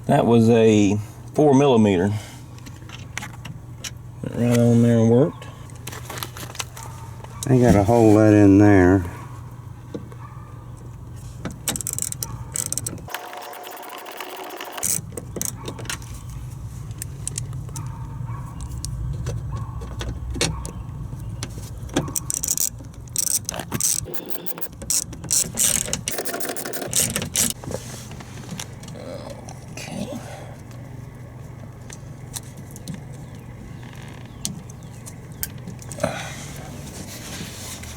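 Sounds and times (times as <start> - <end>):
small clicks and knocks of metal: 10.9 - 13.1, 16.9 - 18.0, 18.6 - 27.6
steady low hum: 25.7 - 37.9.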